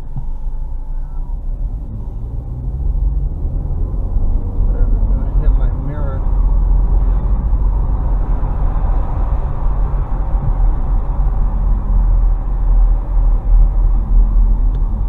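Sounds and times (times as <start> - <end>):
road noise: 0.0 - 15.0
vehicle engine: 0.0 - 15.0
wind noise: 6.2 - 15.0.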